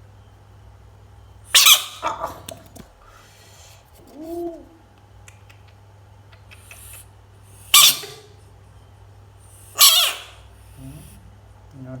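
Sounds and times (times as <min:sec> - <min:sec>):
frog shrill scream: 0:01.5 - 0:02.4, 0:07.7 - 0:08.3, 0:09.7 - 0:10.5
frog hooting: 0:01.5 - 0:02.6, 0:06.4 - 0:08.4, 0:09.6 - 0:10.9.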